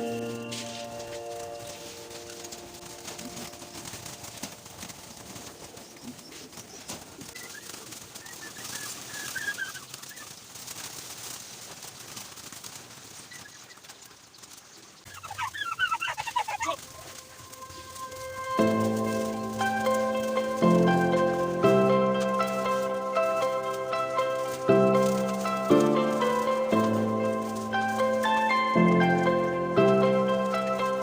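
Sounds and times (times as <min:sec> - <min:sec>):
steady background hiss: 0:00.0 - 0:07.2, 0:16.6 - 0:31.0
birds squawking and chirping: 0:00.0 - 0:10.3, 0:15.0 - 0:21.4.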